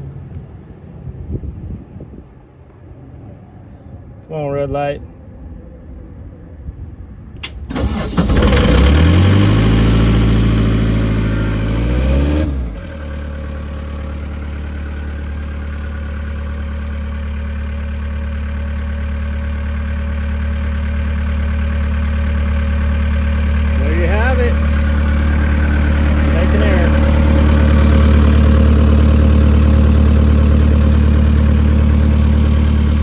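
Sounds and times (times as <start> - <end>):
diesel engine cranking and running: 7.4 - 33.0.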